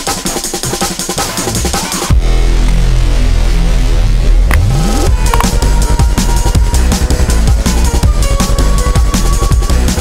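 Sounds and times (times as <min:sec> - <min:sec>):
electronic dance music: 0:03.1 - 0:10.0.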